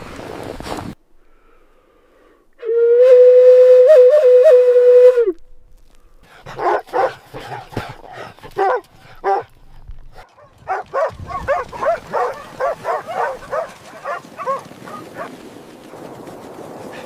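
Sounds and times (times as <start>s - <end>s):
wolf yips and barks: 6.5s - 9.5s, 10.2s - 15.3s
wolf howling: 10.7s - 15.3s.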